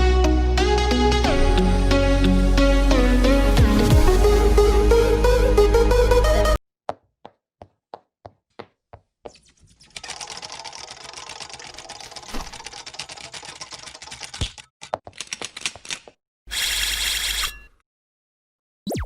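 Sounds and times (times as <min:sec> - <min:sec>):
rapid mechanical clicking and rattling: 0:09.9 - 0:17.4.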